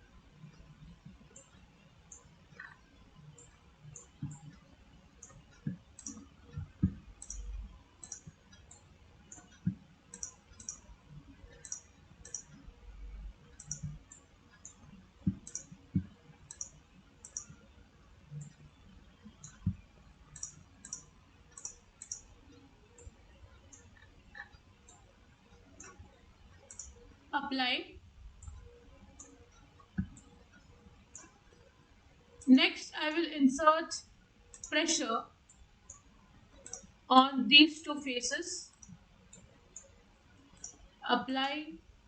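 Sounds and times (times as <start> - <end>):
computer mouse clicking: 0.4 - 4.6, 5.2 - 12.7, 13.5 - 17.7, 18.4 - 27.0, 28.4 - 31.7, 34.5 - 34.8, 35.5 - 37.0, 38.7 - 40.8.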